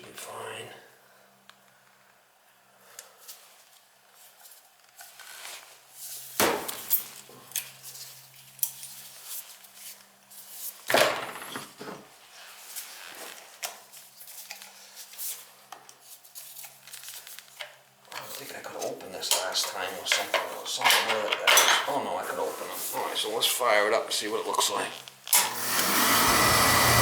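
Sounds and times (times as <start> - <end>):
metal tools clinking and knocking: 19.3 - 21.9.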